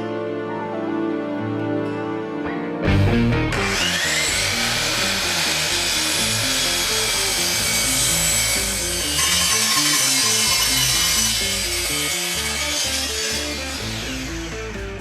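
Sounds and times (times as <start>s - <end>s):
background music: 0.0s - 15.0s
electric saw cutting wood: 3.0s - 15.0s.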